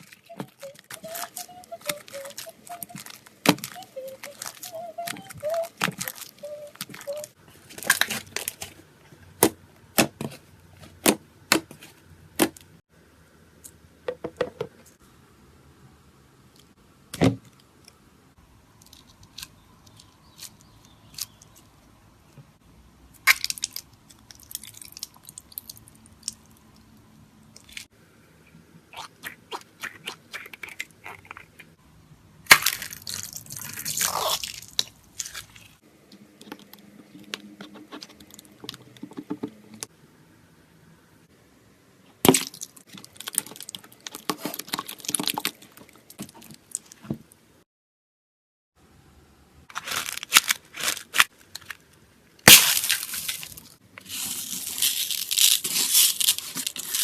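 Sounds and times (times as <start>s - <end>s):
slime squishing and crackling: 0.0s - 8.7s, 28.9s - 31.7s, 32.5s - 35.8s, 42.3s - 47.0s, 52.4s - 57.0s.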